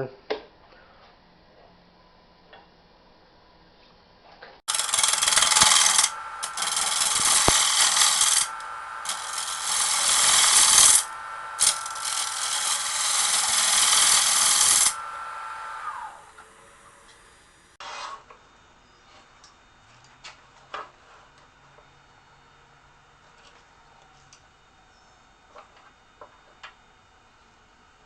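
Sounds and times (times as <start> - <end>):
lathe whine: 4.7 - 17.8
turning tool scraping spinning wood: 4.7 - 19.3.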